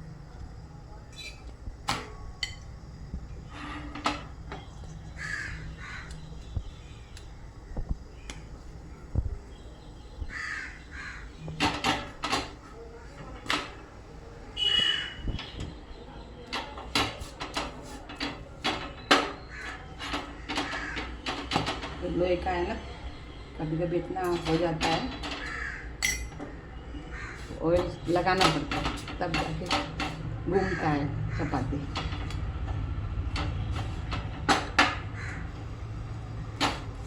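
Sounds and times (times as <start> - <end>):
crows cawing: 5.1 - 6.2, 10.3 - 11.4, 19.5 - 21.2, 25.4 - 26.0, 27.1 - 27.5, 30.5 - 31.6, 35.1 - 35.6
utensils clinking on iron pan: 16.5 - 22.0, 24.2 - 26.5, 27.8 - 30.3.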